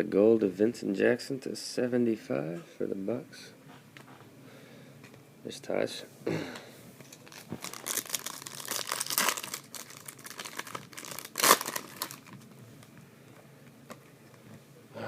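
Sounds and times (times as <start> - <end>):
card pack wrapper crinkling: 7.1 - 12.6.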